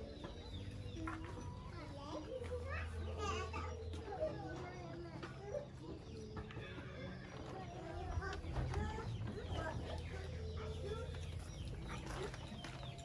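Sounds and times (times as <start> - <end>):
chickens clucking: 0.0 - 13.0.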